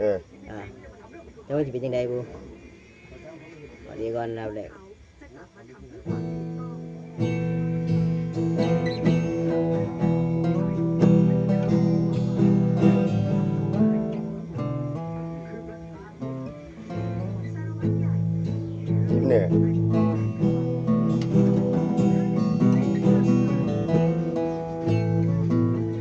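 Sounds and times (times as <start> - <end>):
acoustic guitar chords: 5.9 - 26.0.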